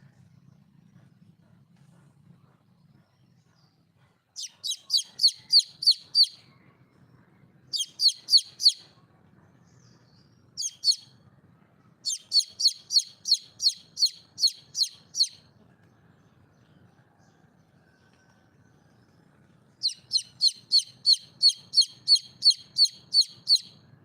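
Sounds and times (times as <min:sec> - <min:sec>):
bird chirping: 0:04.4 - 0:11.2, 0:12.0 - 0:18.0, 0:18.9 - 0:23.9.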